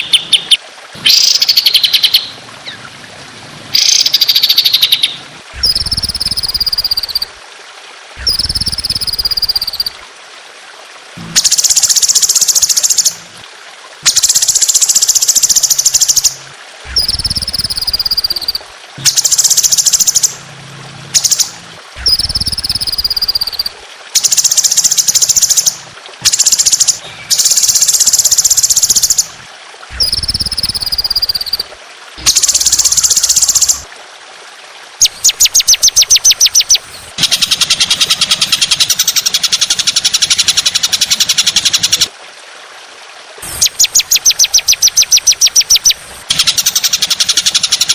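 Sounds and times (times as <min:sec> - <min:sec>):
songbird trilling: 0:00.0 - 0:02.8, 0:03.8 - 0:07.3, 0:17.0 - 0:20.4, 0:43.6 - 0:47.9.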